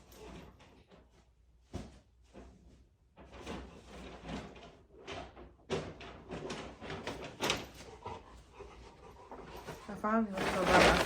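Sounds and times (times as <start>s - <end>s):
objects rustling and knocking: 9.4s - 11.0s.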